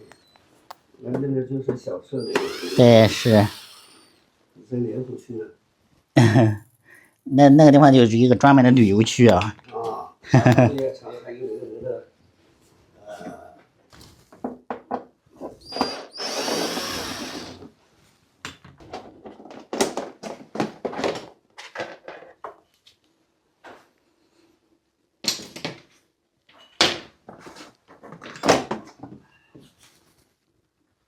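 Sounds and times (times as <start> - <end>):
power drill running: 2.2 - 4.2, 15.8 - 17.7.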